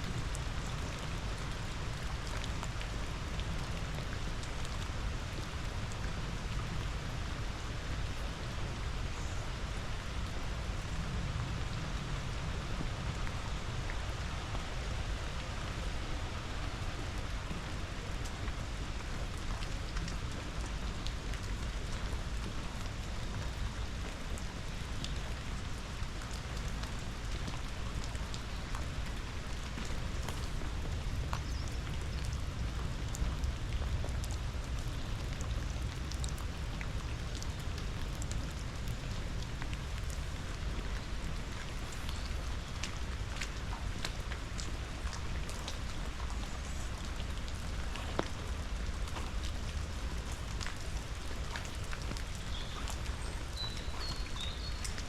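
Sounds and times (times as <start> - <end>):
raindrops ticking: 17.2 - 55.0.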